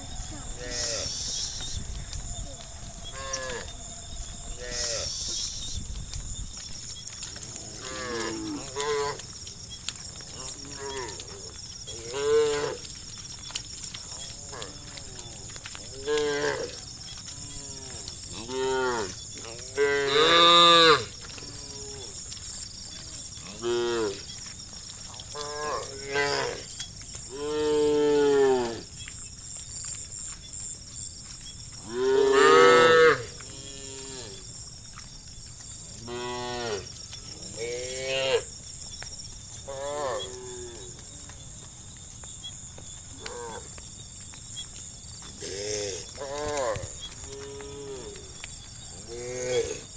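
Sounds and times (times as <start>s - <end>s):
cows mooing: 0.0s - 5.5s, 31.9s - 34.4s.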